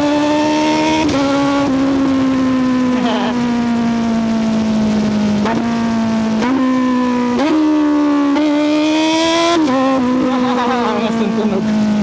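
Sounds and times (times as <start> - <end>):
motorcycle engine and exhaust: 0.0 - 12.0.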